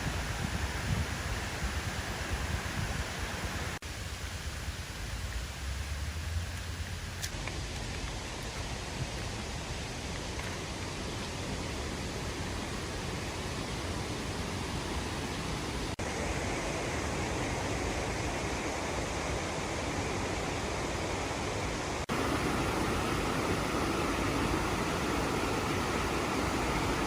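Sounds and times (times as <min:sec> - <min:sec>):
waterfall roaring: 0:03.0 - 0:27.0.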